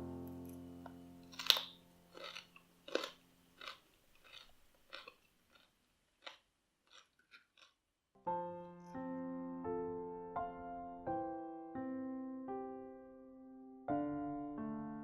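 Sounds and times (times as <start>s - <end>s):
soft piano music: 0.0s - 2.8s, 8.2s - 15.0s
crunchy chewing of raw vegetables: 0.8s - 7.9s.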